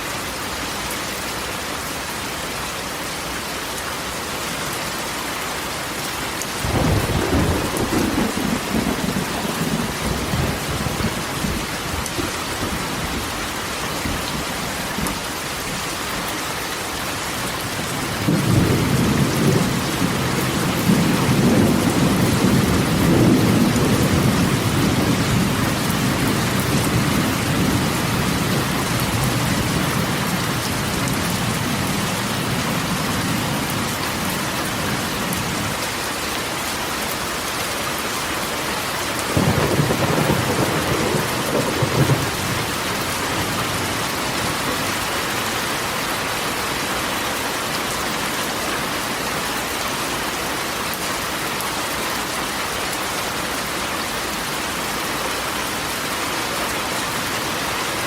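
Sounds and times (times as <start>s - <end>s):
rain on a metal roof: 0.0s - 58.0s
thunder rumbling: 6.6s - 13.3s, 18.1s - 33.9s, 39.3s - 45.1s.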